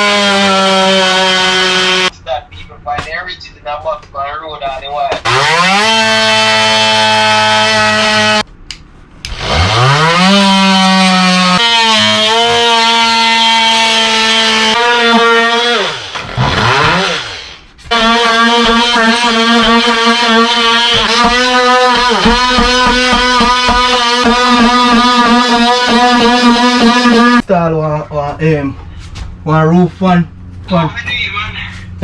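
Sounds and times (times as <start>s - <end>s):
power tool motor whining: 0.0s - 2.1s, 5.2s - 8.4s, 9.3s - 27.4s.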